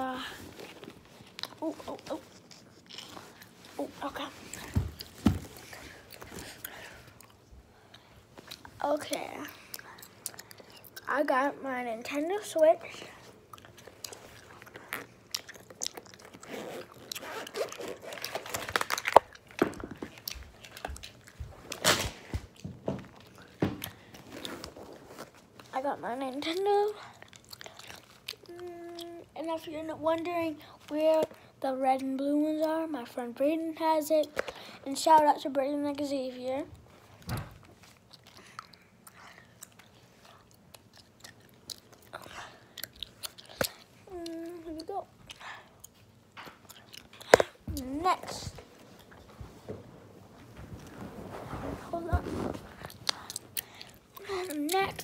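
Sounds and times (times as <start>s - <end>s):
soft rustles of handling: 0.0s - 10.9s, 43.6s - 55.0s.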